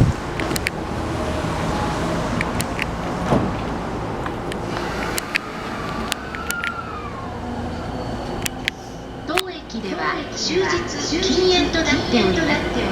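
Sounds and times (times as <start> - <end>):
electric train rumbling: 0.0 - 12.9.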